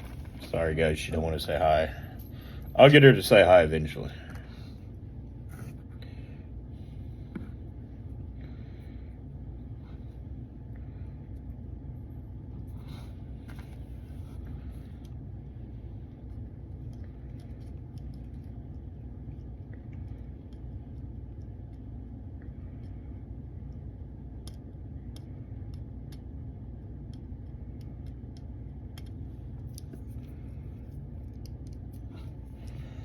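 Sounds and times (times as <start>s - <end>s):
low background rumble: 0.0s - 33.0s
faint sharp clicks and ticks: 16.2s - 30.4s.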